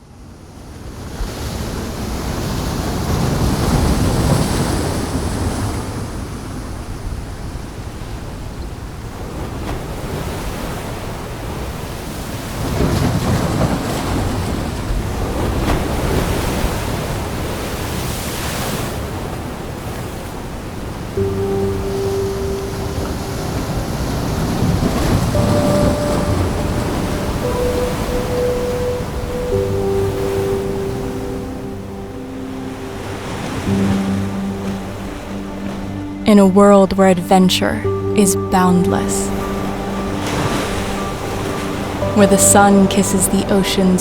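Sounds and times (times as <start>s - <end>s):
wind: 0.0s - 36.3s, 39.2s - 42.6s
ocean waves breaking: 0.9s - 44.0s
low steady tone: 21.2s - 44.0s.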